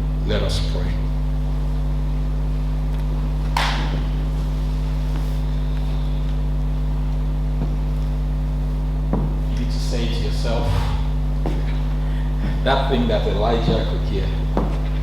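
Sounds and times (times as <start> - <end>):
mains hum: 0.0 - 15.0
soft breath-like noise: 10.6 - 11.2.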